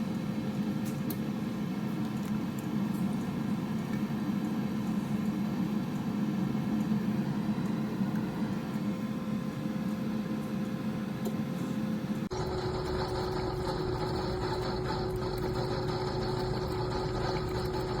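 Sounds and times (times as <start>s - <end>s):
steady mechanical hum: 0.0s - 18.0s.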